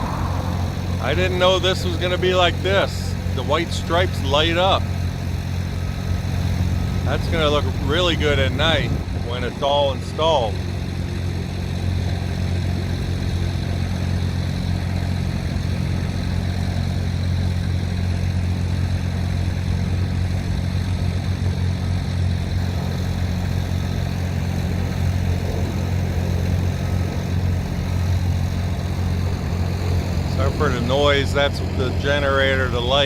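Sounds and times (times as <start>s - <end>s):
generator engine humming: 0.0s - 33.0s.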